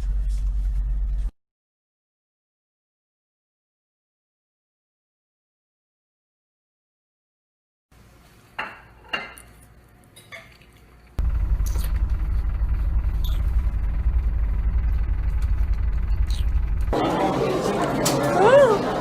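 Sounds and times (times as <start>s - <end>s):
dishware clinking: 8.6s - 9.6s
loud low rumble: 11.2s - 17.6s.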